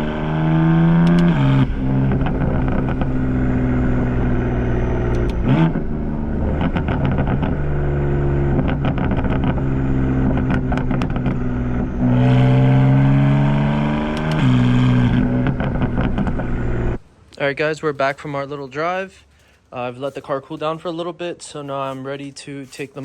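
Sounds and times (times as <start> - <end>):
car engine while driving: 0.0 - 17.0
sharp clicks: 1.0 - 1.4, 5.1 - 5.5, 14.1 - 14.5.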